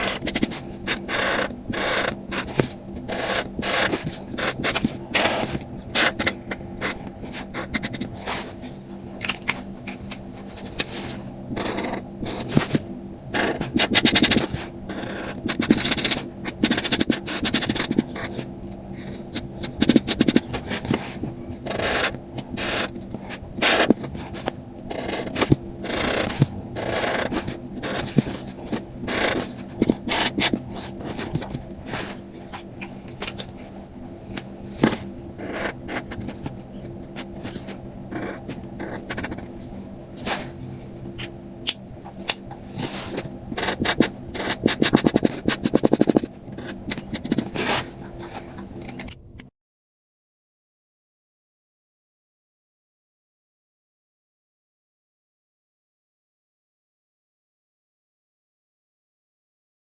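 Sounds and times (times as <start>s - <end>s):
paper card scratching and scraping: 0.0s - 12.8s, 13.4s - 41.4s, 42.1s - 49.0s
faint steady hum: 0.0s - 49.5s.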